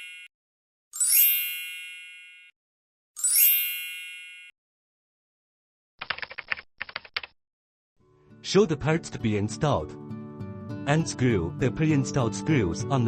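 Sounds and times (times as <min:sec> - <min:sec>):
bright chime dings: 0:00.0 - 0:00.3, 0:01.0 - 0:02.5, 0:03.2 - 0:04.5
keyboard typing clicks: 0:06.0 - 0:07.3.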